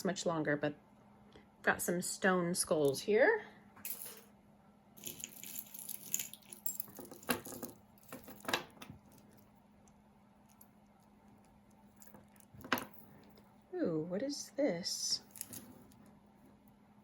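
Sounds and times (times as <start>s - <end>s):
faint steady hum: 0.0s - 17.0s
jewelry clinking and rattling: 5.0s - 9.6s, 10.4s - 13.5s, 15.2s - 16.1s.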